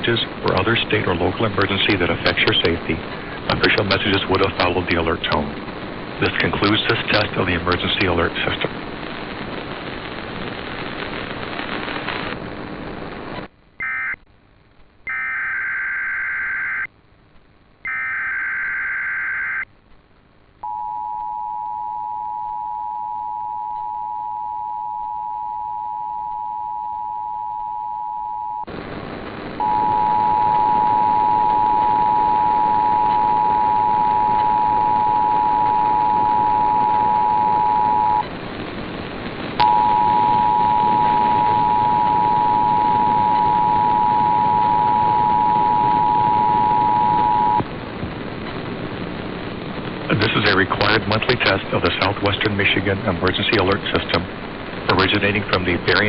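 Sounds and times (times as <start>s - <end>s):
shrill buzzy digital data bursts: 13.8s - 14.2s, 15.1s - 16.9s, 17.9s - 19.6s.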